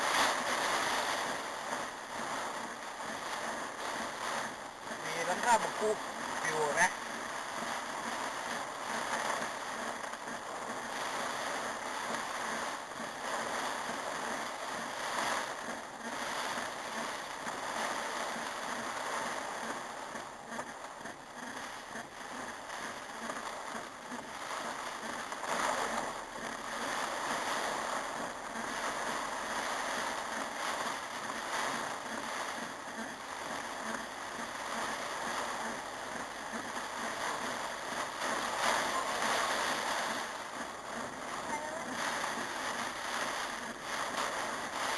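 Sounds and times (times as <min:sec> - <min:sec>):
heavy rain pouring: 0:00.0 - 0:07.3, 0:20.6 - 0:44.9.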